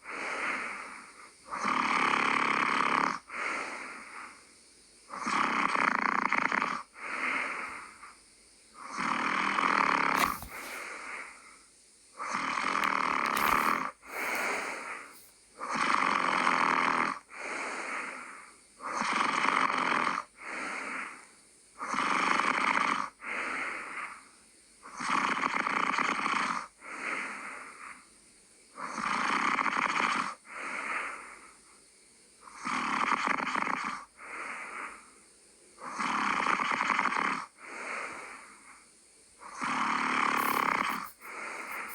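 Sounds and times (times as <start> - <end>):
person snoring: 0.0 - 4.2, 5.1 - 8.0, 8.8 - 11.2, 12.2 - 18.2, 35.8 - 38.5, 39.4 - 41.9.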